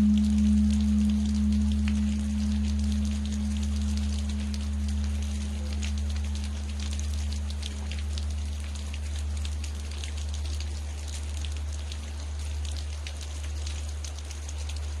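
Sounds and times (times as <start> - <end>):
deep hum of temple bell: 0.0 - 8.6
rain pattering: 0.0 - 15.0.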